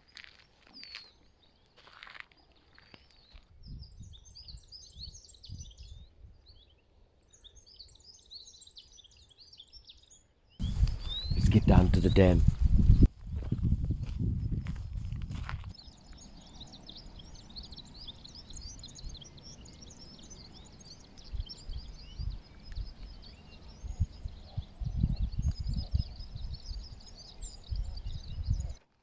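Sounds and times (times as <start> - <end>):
small birds chirping: 0.0 - 29.0
low rumbles and thumps: 10.6 - 15.7.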